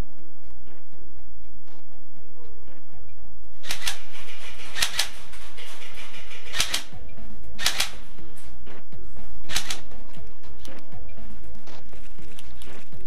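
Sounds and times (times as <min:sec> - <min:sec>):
background music: 0:00.0 - 0:13.0
airsoft gun firing bursts: 0:03.6 - 0:07.0, 0:07.6 - 0:08.0.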